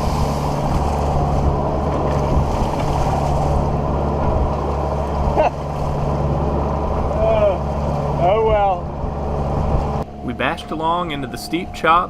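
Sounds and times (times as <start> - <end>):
water splashing: 0.0 - 8.2
low hum: 0.0 - 12.0
rushing wind: 0.0 - 12.0.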